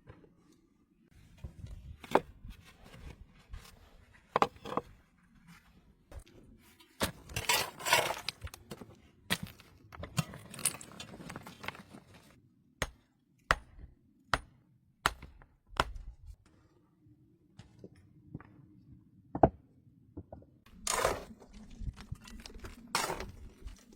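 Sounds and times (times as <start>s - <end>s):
clattering handling sounds: 10.0s - 12.3s.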